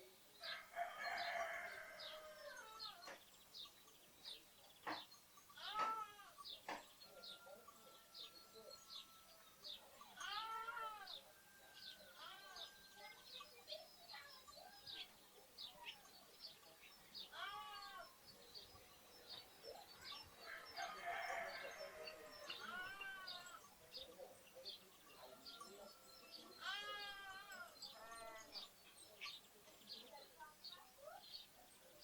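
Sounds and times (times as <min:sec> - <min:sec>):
sparrows chirping: 0:00.0 - 0:32.0
lambs bleating: 0:26.6 - 0:28.5.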